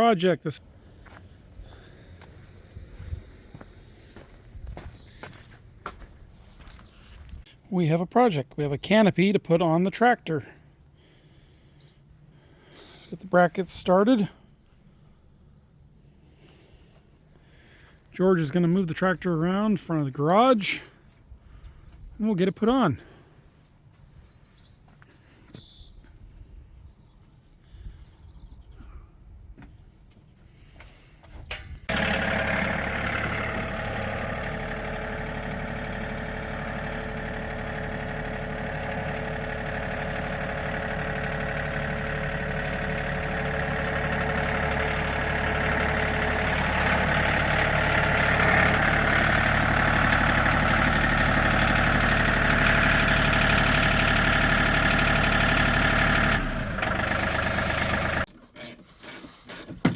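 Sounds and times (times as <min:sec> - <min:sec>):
tractor engine running: 0:00.0 - 0:10.5, 0:30.8 - 0:58.3.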